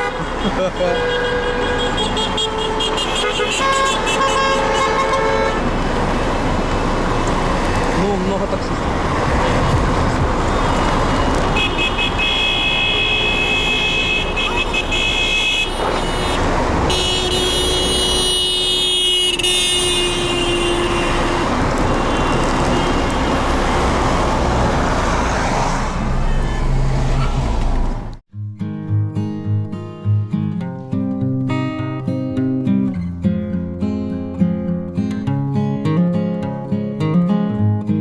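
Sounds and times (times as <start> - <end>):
cars on busy road: 0.0 - 28.3
loud steady rushing noise: 5.8 - 11.5.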